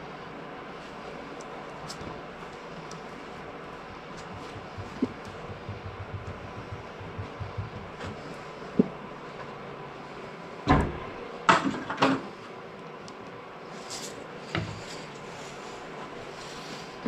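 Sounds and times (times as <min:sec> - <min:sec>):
objects knocking and clunking: 0:04.2 - 0:09.0.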